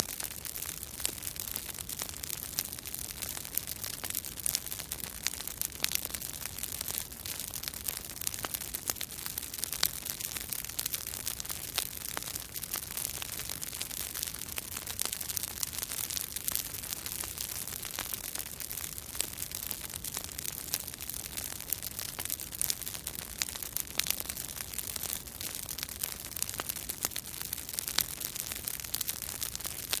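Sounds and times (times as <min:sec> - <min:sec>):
bonfire crackling and popping: 0:00.0 - 0:30.0.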